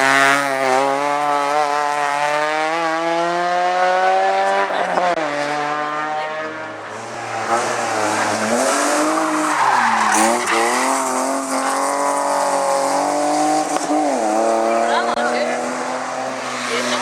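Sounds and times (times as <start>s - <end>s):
race car engine: 0.0s - 17.0s
tyre squeal: 7.0s - 12.2s.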